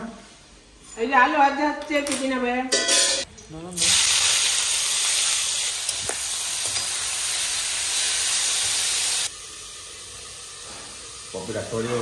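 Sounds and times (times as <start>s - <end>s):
potatoes sizzling in hot oil: 3.8s - 12.0s.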